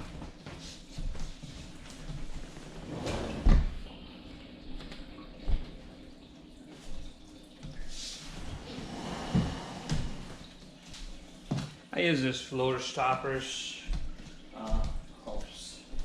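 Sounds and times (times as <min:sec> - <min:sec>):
couch scraping on floor: 0:02.3 - 0:03.7, 0:08.4 - 0:10.5.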